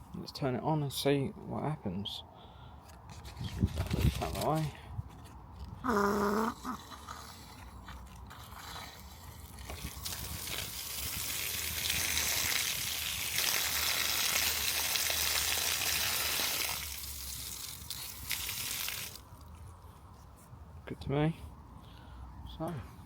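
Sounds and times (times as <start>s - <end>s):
water gushing from tap: 10.0s - 19.2s.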